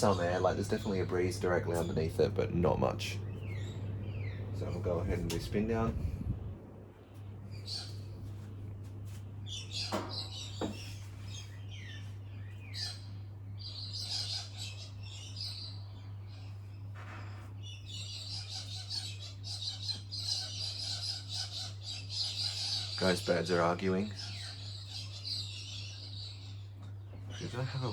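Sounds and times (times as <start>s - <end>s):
birds chirping and trilling: 0.0s - 27.9s
steady low hum: 0.0s - 27.9s.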